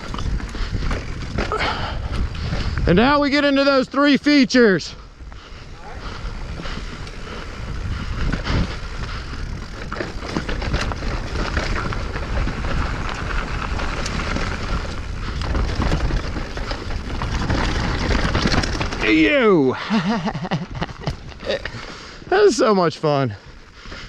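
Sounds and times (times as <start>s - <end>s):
bike clattering over bumps: 0.0s - 3.9s, 5.4s - 22.0s
wind buffeting microphone: 0.0s - 3.9s, 4.8s - 19.2s
bike tyres on rock: 0.0s - 24.0s.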